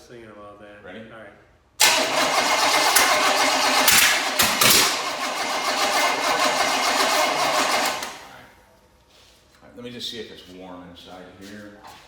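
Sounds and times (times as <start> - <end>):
starter motor cranking engine: 1.8 - 8.4.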